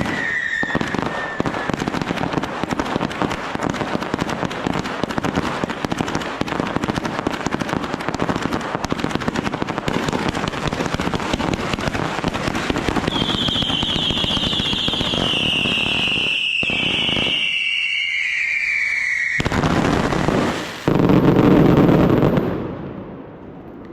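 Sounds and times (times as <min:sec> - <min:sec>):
high whistle sliding down: 0:00.0 - 0:01.7, 0:13.1 - 0:19.5
firecrackers crackling: 0:00.0 - 0:23.9.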